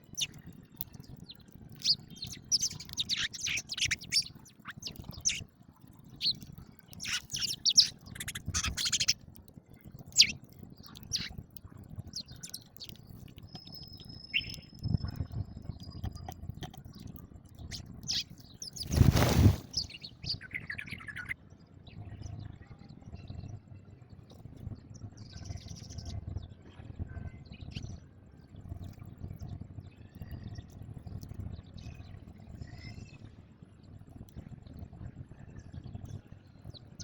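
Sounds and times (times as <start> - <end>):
sparrows chirping: 0.0 - 9.2, 10.0 - 21.4.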